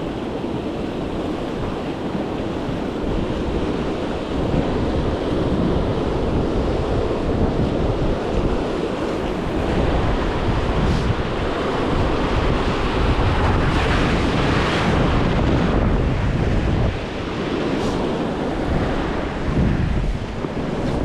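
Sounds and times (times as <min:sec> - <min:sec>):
ocean surf washing in: 0:00.0 - 0:21.0
wind buffeting the microphone: 0:00.0 - 0:21.0.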